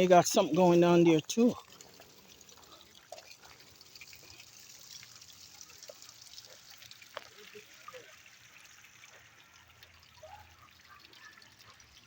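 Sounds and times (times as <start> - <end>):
soft trickling hiss: 0.0 - 11.8.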